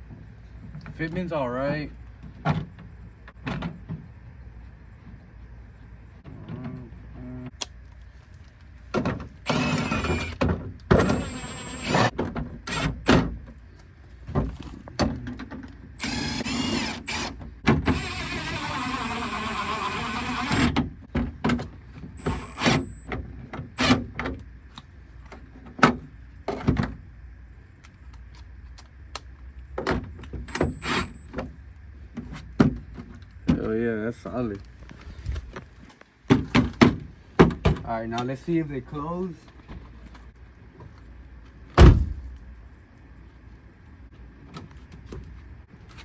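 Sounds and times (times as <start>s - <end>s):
power drill whining: 9.4s - 12.1s, 16.0s - 20.7s, 22.2s - 23.1s, 30.5s - 31.3s.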